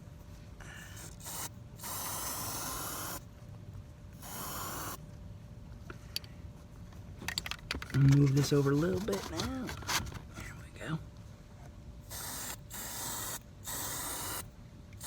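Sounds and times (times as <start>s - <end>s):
aerosol can hissing: 1.0s - 3.2s, 4.2s - 5.0s, 12.1s - 14.5s.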